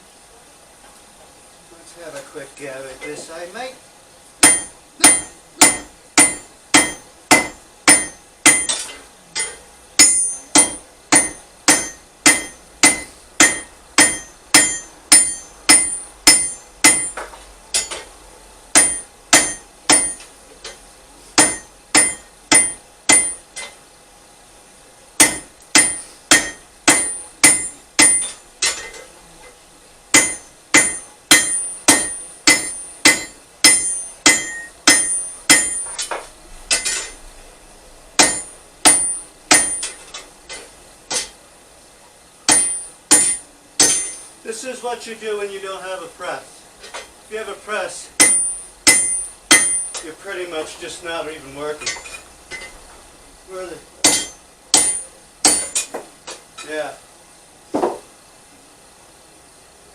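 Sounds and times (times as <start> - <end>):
hammer striking steel on anvil: 4.4 - 18.1, 18.7 - 20.8, 21.4 - 23.8, 25.2 - 29.1, 30.1 - 37.2, 38.2 - 41.4, 42.5 - 44.3, 48.2 - 50.1, 54.0 - 56.0.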